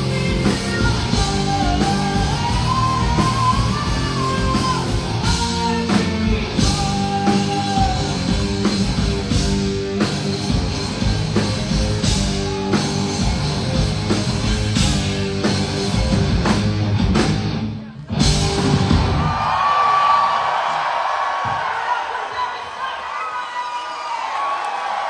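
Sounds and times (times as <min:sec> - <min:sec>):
crowd cheering: 0:00.0 - 0:16.4, 0:17.5 - 0:25.0
live rock band playing: 0:00.0 - 0:19.3
drum kit: 0:00.0 - 0:19.6.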